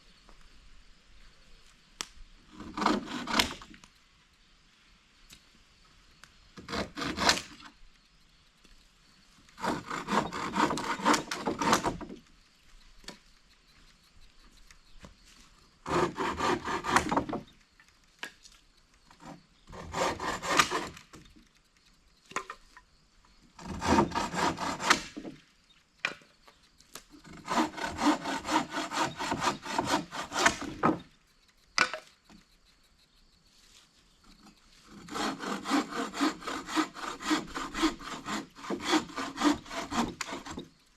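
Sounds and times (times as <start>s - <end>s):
hand saw cutting wood: 2.5s - 3.8s, 6.6s - 7.7s, 9.6s - 12.2s, 15.8s - 17.5s, 19.1s - 21.2s, 23.6s - 25.4s, 27.2s - 31.2s, 34.4s - 40.8s.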